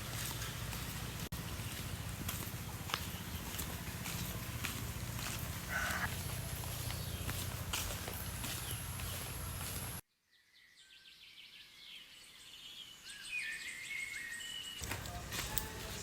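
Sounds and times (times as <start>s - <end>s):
birds chirping: 0.0s - 10.0s
low outdoor rumble: 0.0s - 10.0s.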